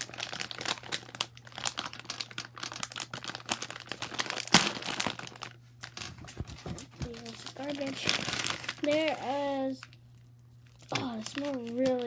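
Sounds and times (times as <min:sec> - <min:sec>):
plastic wrappers crinkling: 0:00.0 - 0:12.0.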